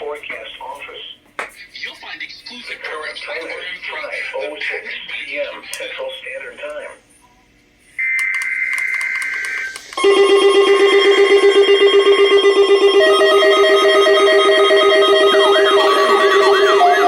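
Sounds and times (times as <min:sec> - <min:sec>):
pulsing alert tones: 0:10.0 - 0:17.0
wailing siren-like sweep: 0:10.8 - 0:17.0.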